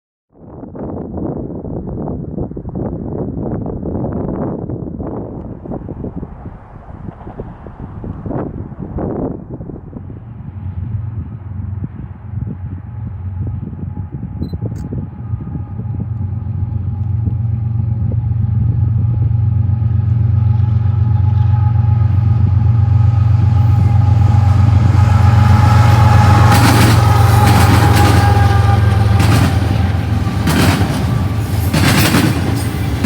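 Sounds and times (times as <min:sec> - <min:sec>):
diesel locomotive engine drone: 0:00.5 - 0:33.0
wheel clatter on rails: 0:26.2 - 0:33.0.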